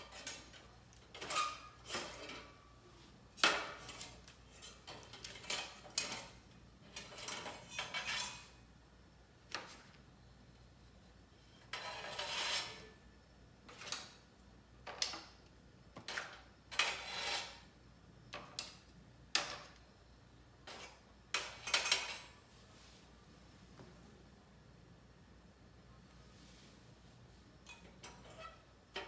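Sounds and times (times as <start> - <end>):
scraping steel griddle plate: 11.7 - 12.9.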